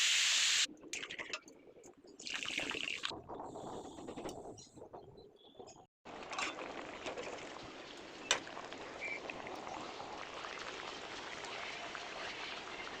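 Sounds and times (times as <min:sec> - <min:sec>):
food cooking crackling hiss: 0:00.0 - 0:00.7.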